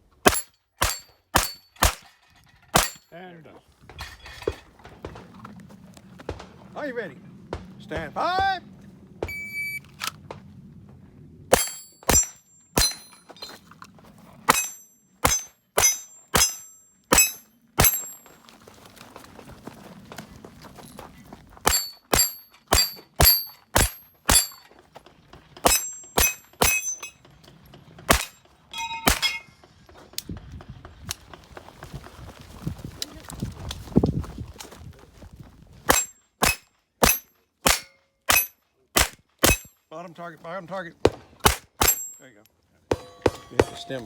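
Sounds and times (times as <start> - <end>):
pistol shots: 0.2 - 2.0, 2.7 - 3.0, 21.6 - 24.5, 28.1 - 28.3, 35.9 - 39.7, 41.1 - 42.2
steel plate ringing: 11.5 - 13.3, 14.5 - 18.2, 21.7 - 24.6, 25.6 - 27.2, 28.2 - 29.5, 41.8 - 42.2, 42.9 - 44.0.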